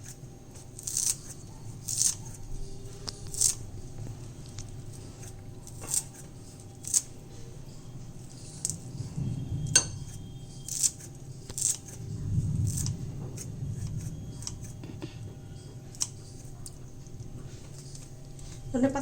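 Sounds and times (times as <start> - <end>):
low hum: 0.0 - 19.0
utensil clinking on dishes: 9.7 - 10.2.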